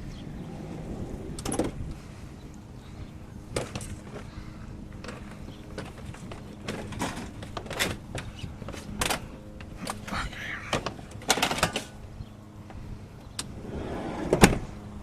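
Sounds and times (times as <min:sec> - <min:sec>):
steady low rumble: 0:00.0 - 0:11.3.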